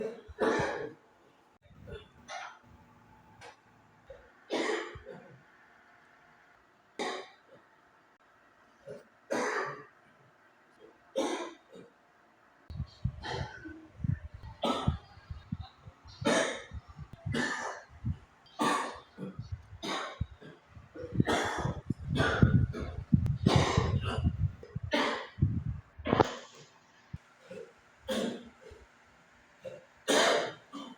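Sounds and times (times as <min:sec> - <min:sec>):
person coughing: 0:00.0 - 0:01.0, 0:04.1 - 0:05.4, 0:08.9 - 0:09.9, 0:12.8 - 0:26.6, 0:27.4 - 0:28.8, 0:29.6 - 0:30.9.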